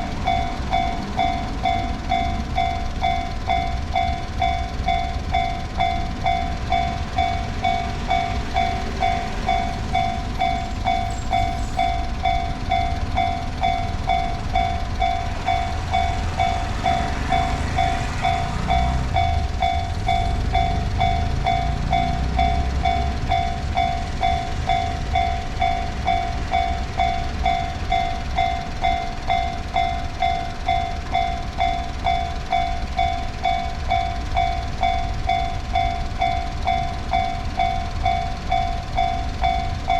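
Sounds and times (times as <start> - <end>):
level crossing warning bell: 0.0 - 39.9
train rumble: 0.0 - 39.9.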